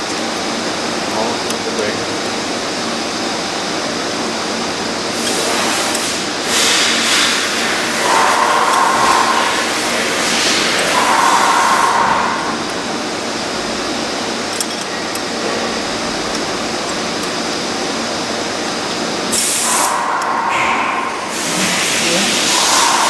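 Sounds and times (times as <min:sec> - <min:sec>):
machine hum: 0:00.0 - 0:23.0
valve grinder running: 0:04.4 - 0:23.0.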